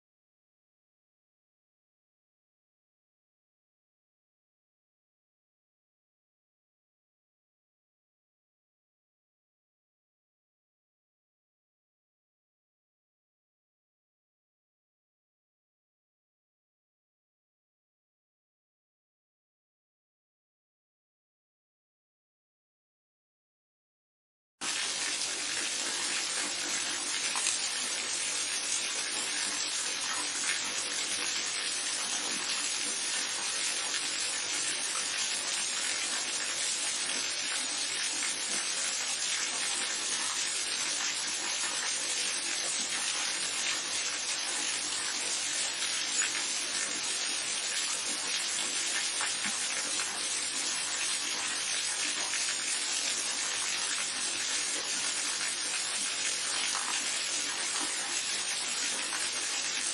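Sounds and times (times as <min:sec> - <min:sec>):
rushing running water: 0:24.6 - 0:59.9.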